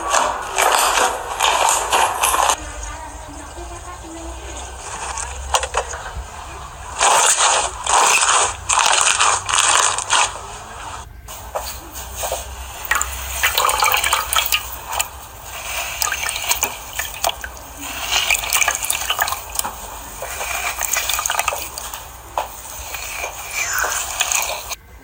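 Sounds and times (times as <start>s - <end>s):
slime squelching and popping: 11.4s - 24.8s.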